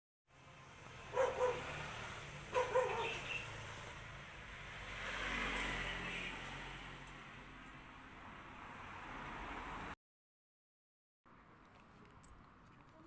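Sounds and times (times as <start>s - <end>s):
dog barking: 1.1s - 1.8s, 2.5s - 3.4s.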